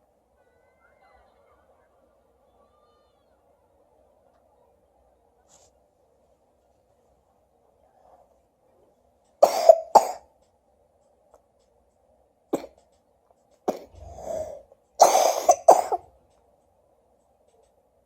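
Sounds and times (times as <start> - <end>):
person coughing: 13.7 - 16.0.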